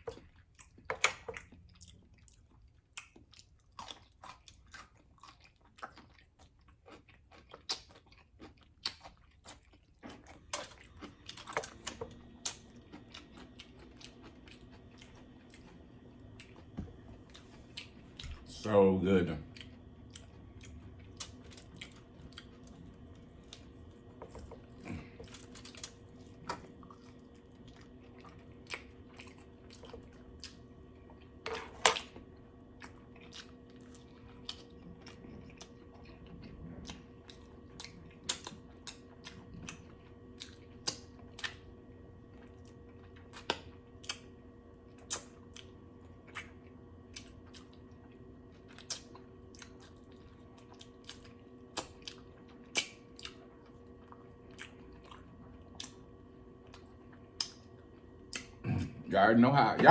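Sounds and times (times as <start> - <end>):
chewing with lip smacks: 0.0 - 59.0
faint steady hum: 0.0 - 59.9.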